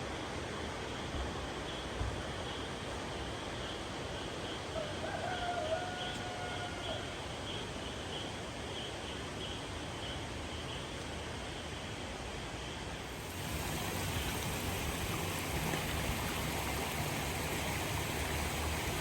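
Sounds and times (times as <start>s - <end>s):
steady background hiss: 0.0s - 19.0s
rooster crowing: 4.8s - 7.1s.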